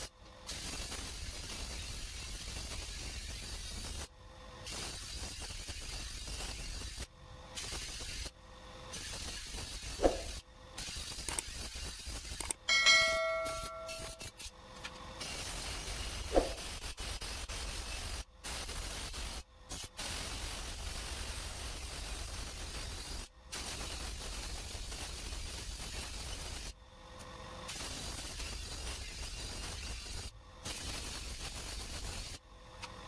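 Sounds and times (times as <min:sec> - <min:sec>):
ringing metal clang: 0:12.7 - 0:14.2.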